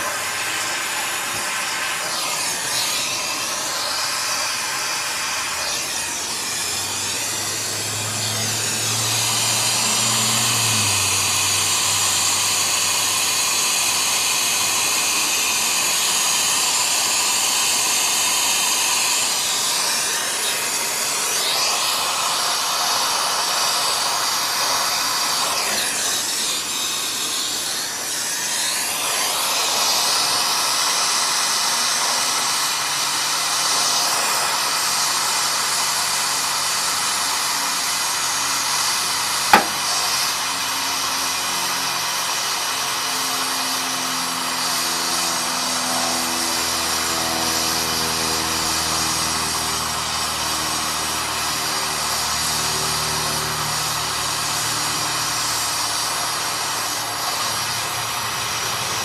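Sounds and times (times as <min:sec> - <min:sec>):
torch flame hissing: 0:00.0 - 0:43.1, 0:46.2 - 0:59.0.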